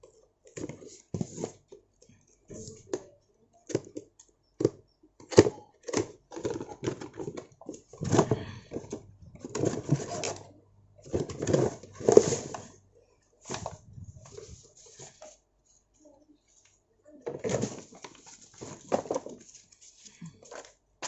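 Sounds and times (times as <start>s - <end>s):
packaging rustling and crinkling: 13.4s - 15.4s, 17.4s - 20.8s.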